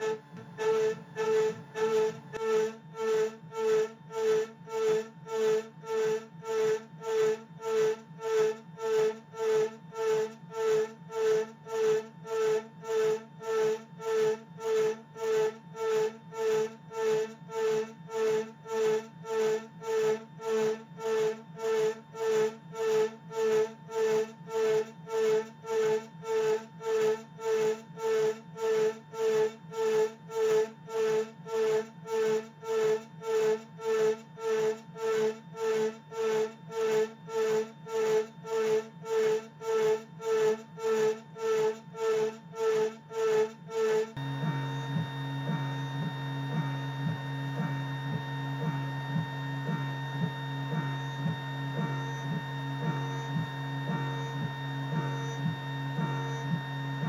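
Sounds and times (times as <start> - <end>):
spindle cutting metal whine: 0.0 - 2.4, 44.2 - 57.0.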